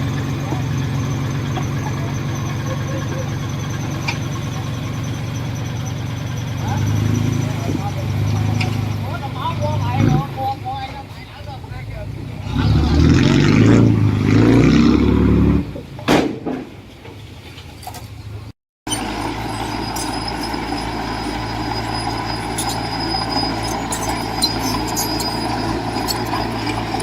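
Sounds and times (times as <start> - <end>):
diesel engine working under load: 0.0 - 27.0.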